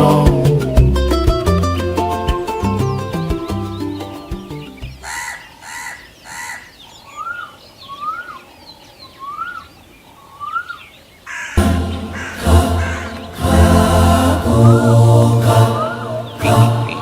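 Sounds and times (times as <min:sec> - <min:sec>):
background music: 0:00.0 - 0:05.2, 0:11.6 - 0:17.0
cuckoo calling: 0:00.0 - 0:17.0
small birds twittering: 0:00.2 - 0:13.4, 0:14.4 - 0:17.0
crow cawing: 0:05.0 - 0:07.4, 0:11.3 - 0:13.4.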